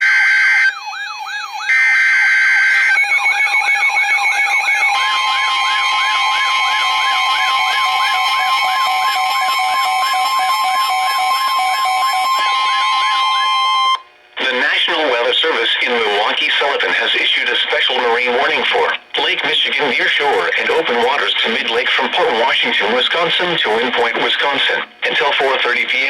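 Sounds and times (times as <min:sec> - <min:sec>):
warbling siren-like alarm: 0:00.0 - 0:14.1
steady warning alarm tone: 0:00.0 - 0:14.8.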